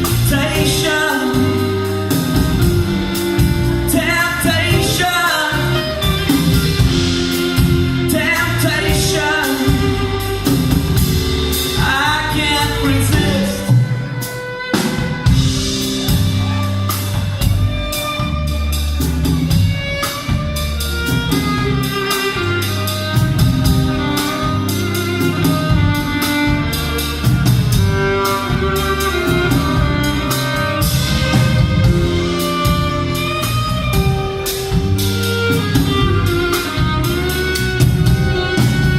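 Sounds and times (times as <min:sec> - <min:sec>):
person singing: 0:00.0 - 0:18.2
live band playing: 0:00.0 - 0:38.9.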